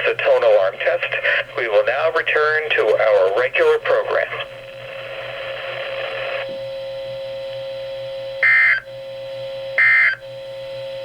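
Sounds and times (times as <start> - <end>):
static hiss: 2.7 - 6.4
steady buzzing tone: 4.5 - 11.0.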